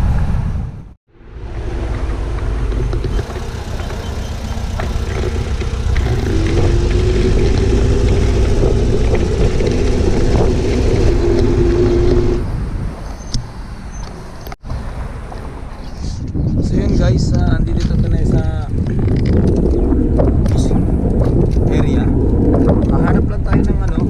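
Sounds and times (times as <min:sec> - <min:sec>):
heavy low rumble: 0:00.0 - 0:13.0, 0:14.8 - 0:24.0
vehicle engine running: 0:01.2 - 0:12.4.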